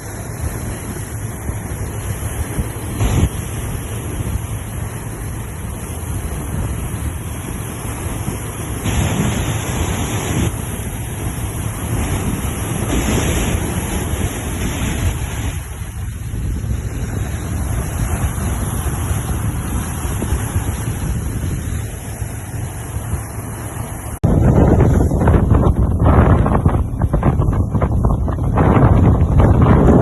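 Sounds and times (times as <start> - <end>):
sea waves breaking on shore: 0.0 - 30.0
wind buffeting microphone: 0.0 - 30.0.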